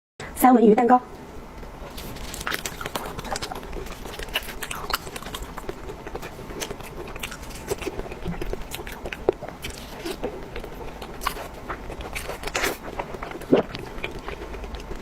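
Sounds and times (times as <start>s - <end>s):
person chewing and biting: 1.8s - 15.0s
mouth smacks: 12.0s - 15.0s.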